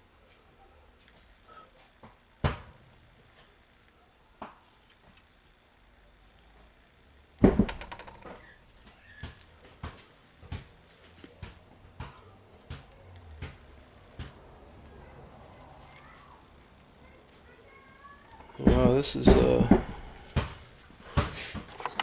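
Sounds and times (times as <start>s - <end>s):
metallic clatter and rattle: 21.6s - 22.0s.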